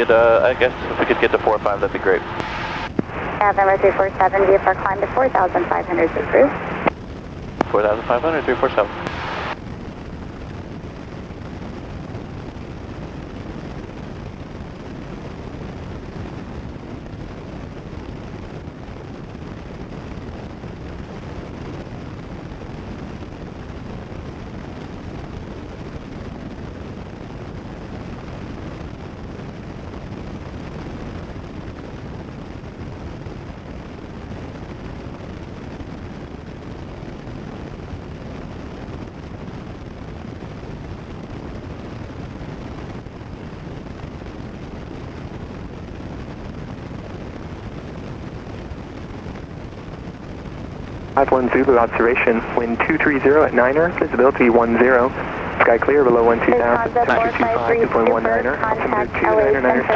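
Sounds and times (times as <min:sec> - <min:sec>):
airflow noise: 0:00.0 - 0:06.9, 0:07.6 - 0:09.6, 0:51.2 - 0:59.9
airplane engine and propeller drone: 0:00.0 - 0:06.9, 0:07.6 - 0:09.6, 0:51.2 - 0:59.9.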